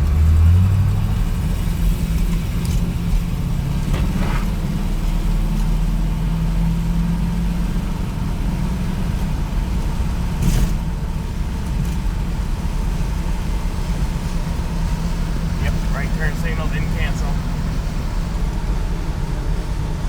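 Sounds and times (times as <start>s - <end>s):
car engine drone: 0.0s - 20.0s
road rumble: 0.0s - 20.0s.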